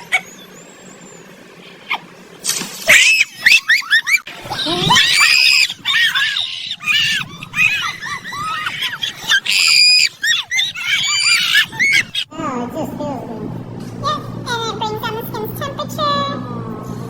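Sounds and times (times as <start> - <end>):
high-pitched squealing calls: 2.8 - 12.3
harsh squeals: 2.9 - 12.3.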